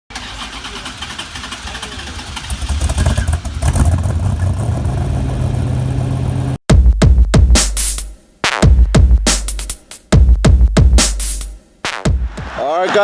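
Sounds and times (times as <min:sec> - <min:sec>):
car engine revving: 0:00.1 - 0:06.6.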